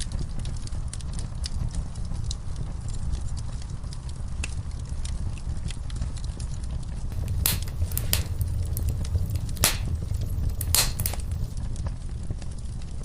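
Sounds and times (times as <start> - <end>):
fire rumbling: 7.1 - 12.0
fire crackling and popping: 7.1 - 12.9.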